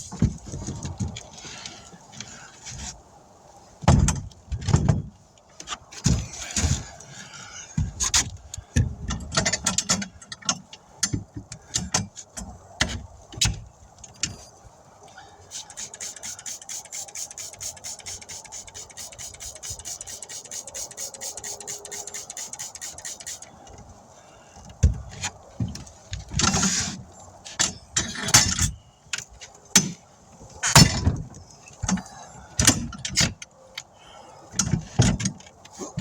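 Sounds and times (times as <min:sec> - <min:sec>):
rapid even clicking: 0:15.5 - 0:23.5.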